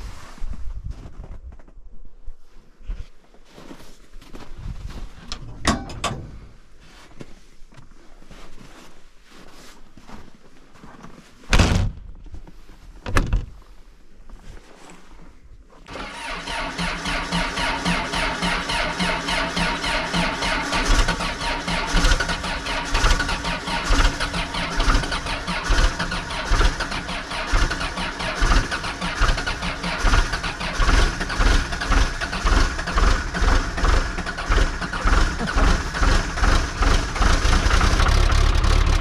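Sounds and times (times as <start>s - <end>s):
excavator diesel engine running: 15.9s - 39.0s.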